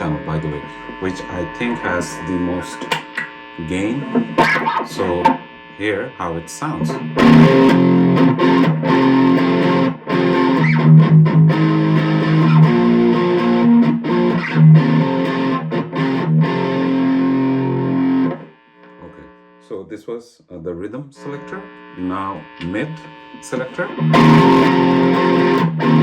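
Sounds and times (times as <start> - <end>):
distorted electric guitar chords: 0.0 - 19.6, 21.2 - 26.0.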